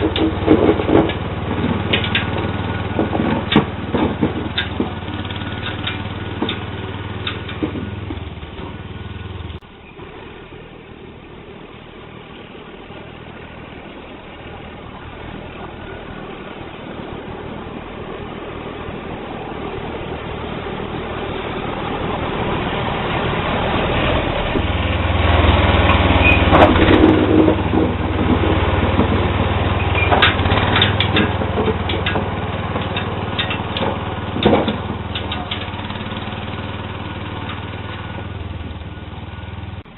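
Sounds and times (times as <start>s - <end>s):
clanks: 0.0s - 10.1s, 24.1s - 38.8s
garden tractor engine running: 0.0s - 39.9s.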